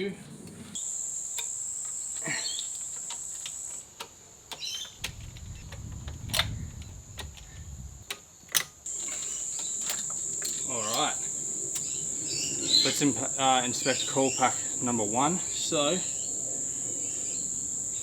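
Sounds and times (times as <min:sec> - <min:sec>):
high-pitched insect drone: 0:00.8 - 0:03.9, 0:08.9 - 0:18.0
bird chirps: 0:02.0 - 0:03.8, 0:04.5 - 0:05.7, 0:08.9 - 0:14.9
clicks of parts being handled: 0:02.6 - 0:06.6, 0:07.2 - 0:11.1.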